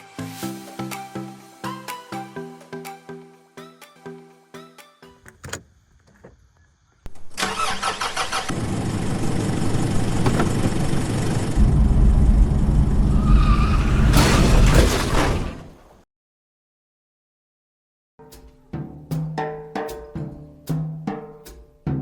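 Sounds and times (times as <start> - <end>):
car engine starting and running: 7.2 - 15.8.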